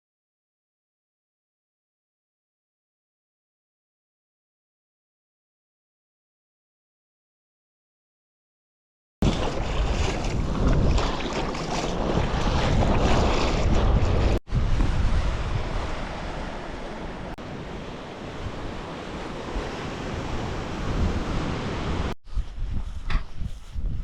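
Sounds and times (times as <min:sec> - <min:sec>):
sea washing: 0:09.2 - 0:22.2
wind buffeting microphone: 0:09.2 - 0:24.0.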